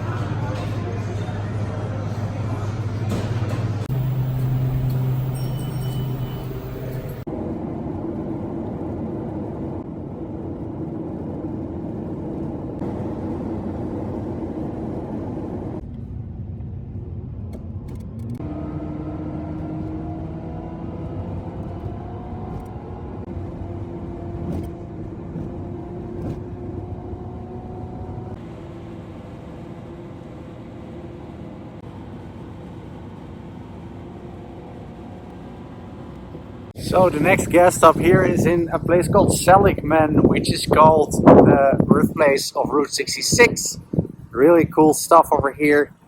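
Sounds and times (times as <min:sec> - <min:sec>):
car engine drone: 0:00.0 - 0:46.0
road and tyre noise: 0:00.0 - 0:46.0.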